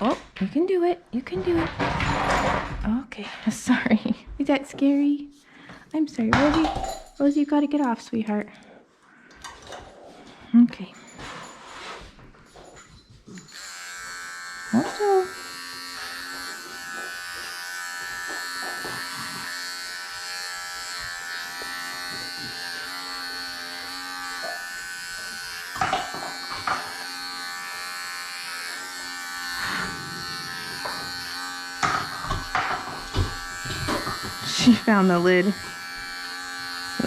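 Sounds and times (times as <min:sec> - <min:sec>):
electric clippers buzzing: 0:13.4 - 0:37.0.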